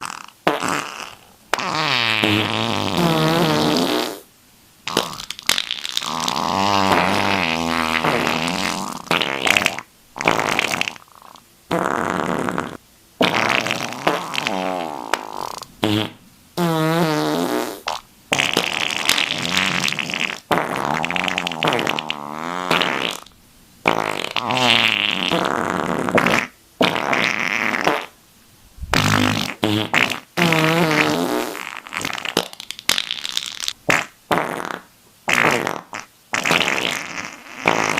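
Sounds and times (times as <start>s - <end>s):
sputtering fart sound effects: 0.0s - 4.3s, 4.9s - 28.2s, 28.8s - 37.9s.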